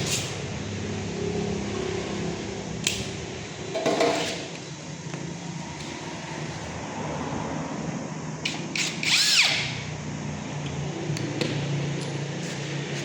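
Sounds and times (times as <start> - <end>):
handheld power tool whine: 8.4 - 9.9.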